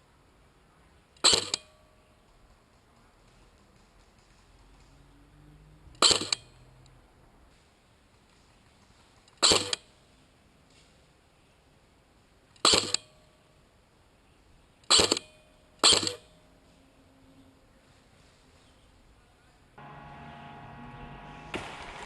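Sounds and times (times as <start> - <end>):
airsoft gun firing bursts: 14.9 - 16.2.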